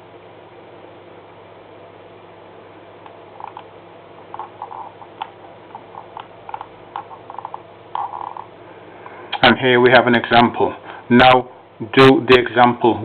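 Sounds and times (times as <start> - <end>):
steady low hum: 0.0 - 13.0
computer mouse clicks: 3.4 - 3.7.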